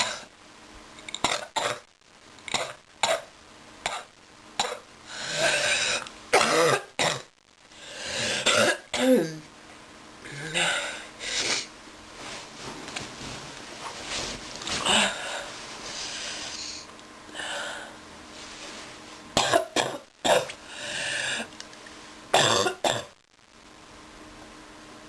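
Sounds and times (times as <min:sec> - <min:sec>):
person coughing: 0:03.9 - 0:07.3, 0:08.2 - 0:09.4, 0:22.4 - 0:23.2
person breathing: 0:05.0 - 0:06.0, 0:07.7 - 0:08.4, 0:14.7 - 0:18.8, 0:20.6 - 0:21.6.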